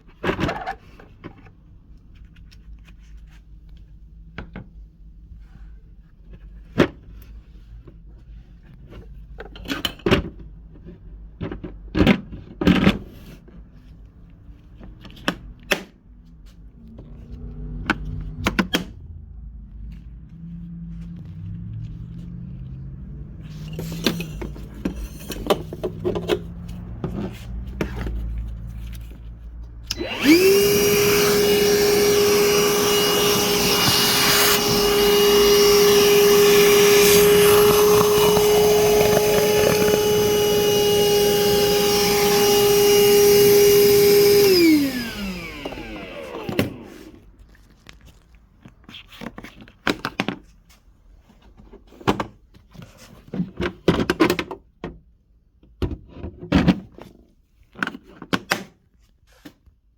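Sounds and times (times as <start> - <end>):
vacuum motor whine: 29.9 - 47.2.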